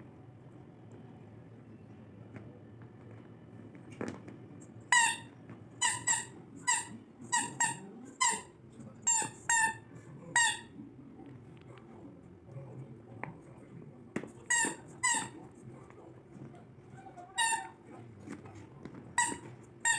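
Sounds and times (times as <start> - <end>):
puppy chewing toy: 2.3 - 19.9
squeaky dog toy squeaking: 4.9 - 10.8, 14.5 - 15.4, 17.1 - 17.8, 19.2 - 19.9.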